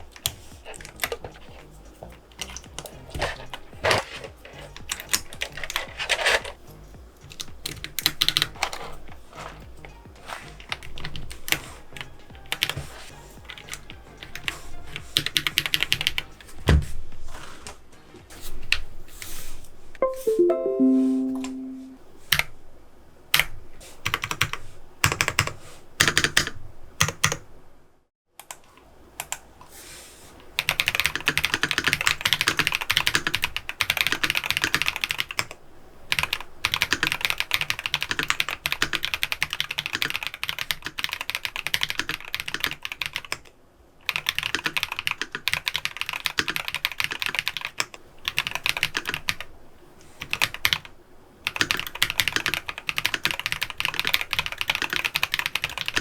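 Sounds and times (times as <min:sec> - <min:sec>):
typing on mechanical keyboard: 0:02.3 - 0:06.6, 0:07.2 - 0:09.6, 0:13.5 - 0:16.3, 0:23.4 - 0:27.4, 0:30.6 - 0:49.5, 0:50.2 - 0:50.9, 0:51.5 - 0:56.0.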